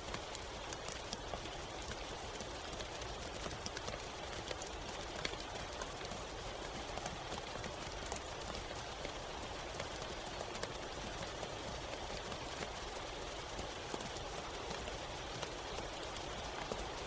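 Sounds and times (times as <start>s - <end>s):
rain pattering on hard surface: 0.0s - 17.0s.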